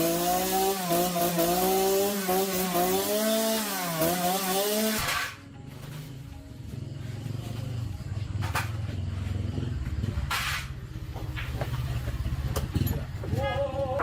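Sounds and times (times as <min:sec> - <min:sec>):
chainsaw idling: 0:00.0 - 0:05.1.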